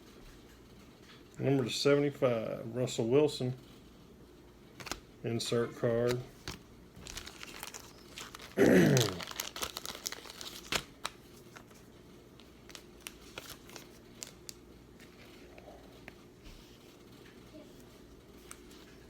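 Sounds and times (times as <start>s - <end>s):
wrapper crinkling and tearing: 4.8s - 5.0s, 5.9s - 15.6s
cards being handled: 4.8s - 19.0s.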